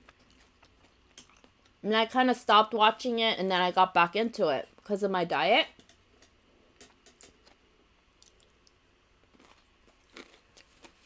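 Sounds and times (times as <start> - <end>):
mouth clicks of quiet chewing: 8.2 - 8.8.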